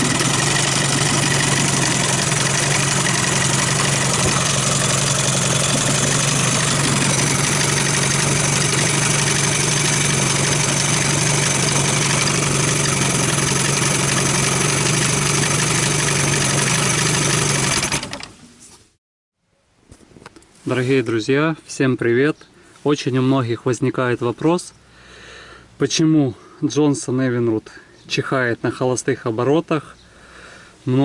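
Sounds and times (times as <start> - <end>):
outboard motor idling: 0.0 - 18.4.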